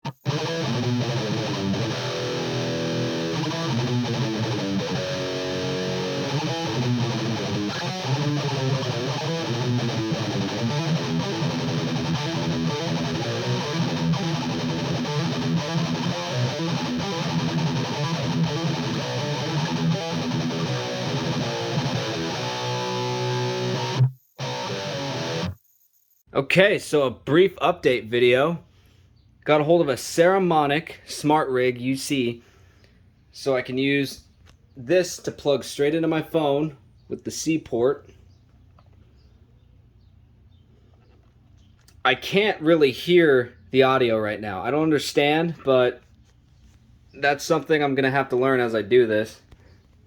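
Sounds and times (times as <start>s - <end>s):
distorted electric guitar riffs: 0.0s - 25.6s.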